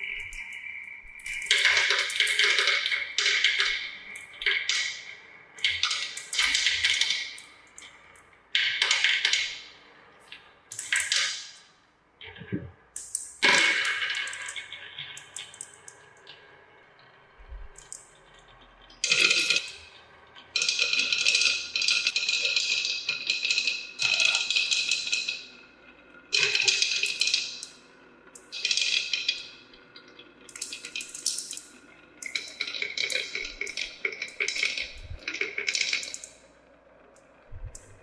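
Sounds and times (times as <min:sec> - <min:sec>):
marbles clattering down plastic run: 0:32.2 - 0:36.2.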